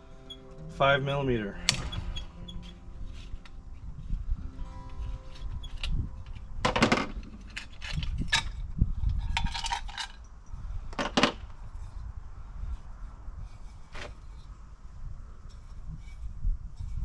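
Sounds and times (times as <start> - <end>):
metal tools clinking: 4.6 - 8.6, 9.2 - 11.4.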